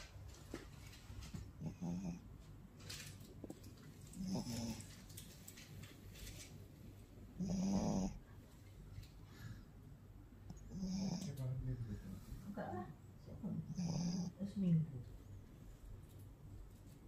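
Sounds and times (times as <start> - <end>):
person snoring heavily: 7.4 - 8.2.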